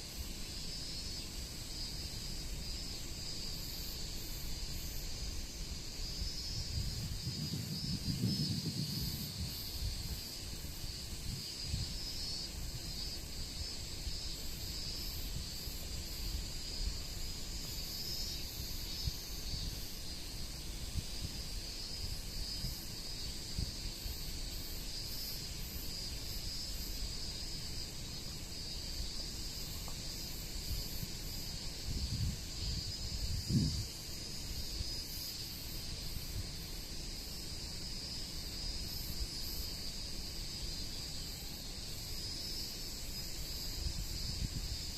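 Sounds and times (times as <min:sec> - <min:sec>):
high-pitched insect chorus: 0:00.0 - 0:44.9
wind buffeting microphone: 0:06.1 - 0:10.3, 0:31.5 - 0:34.0, 0:43.8 - 0:44.9.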